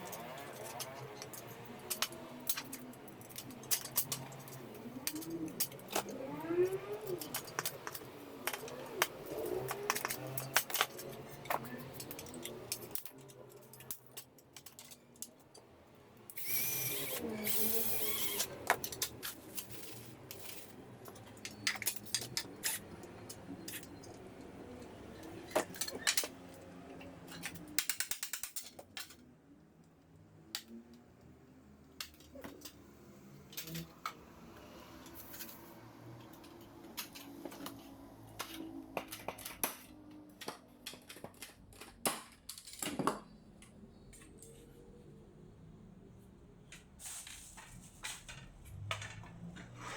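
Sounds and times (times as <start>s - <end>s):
hand tools clicking and tapping: 0.0s - 6.2s, 6.9s - 15.7s, 18.1s - 29.3s, 36.2s - 44.6s
rasping ratchet-like noise: 16.4s - 18.5s.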